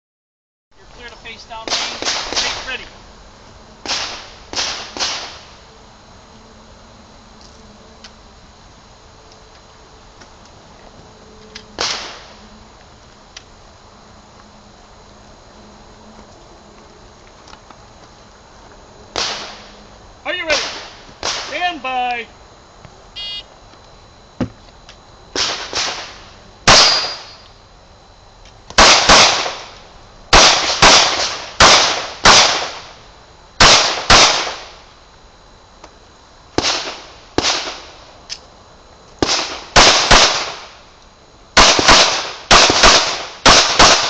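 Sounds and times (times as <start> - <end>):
pistol shots: 1.6 - 2.8, 3.8 - 5.4, 19.1 - 19.6, 25.4 - 26.1, 26.7 - 27.4, 28.8 - 29.7, 30.3 - 32.9, 33.6 - 34.7, 39.2 - 40.6, 41.6 - 44.0.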